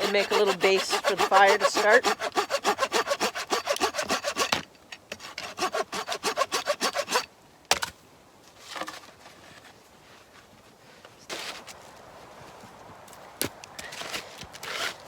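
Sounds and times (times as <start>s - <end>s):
hand saw cutting wood: 0.0s - 7.3s, 14.0s - 15.0s.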